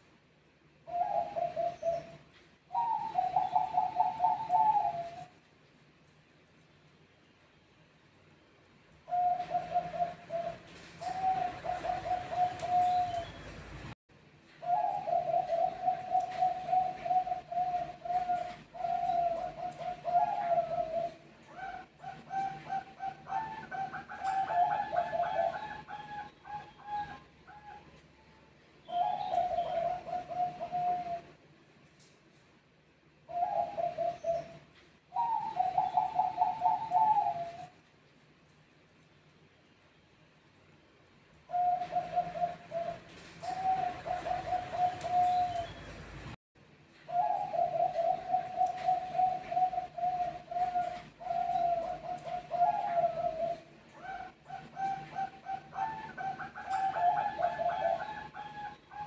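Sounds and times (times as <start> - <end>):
doves cooing in trills: 0.8 - 5.4, 9.0 - 13.5, 14.6 - 28.0, 28.9 - 31.4, 33.2 - 37.8, 41.4 - 46.3, 47.0 - 59.0.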